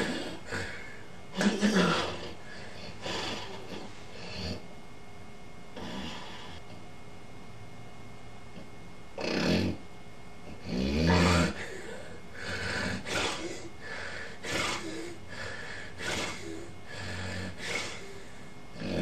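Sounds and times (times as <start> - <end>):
person snoring: 0.0 - 4.6, 5.8 - 6.7, 9.2 - 9.8, 10.6 - 19.0.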